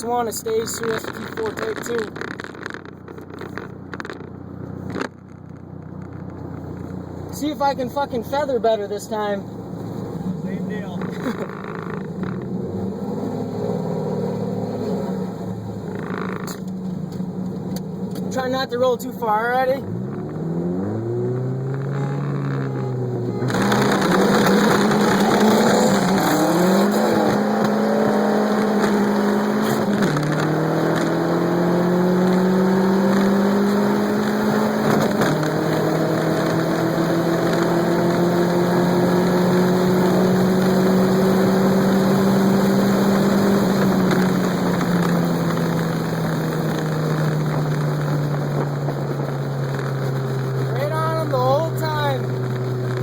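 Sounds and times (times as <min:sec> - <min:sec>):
car engine at full throttle: 0:00.0 - 0:53.0.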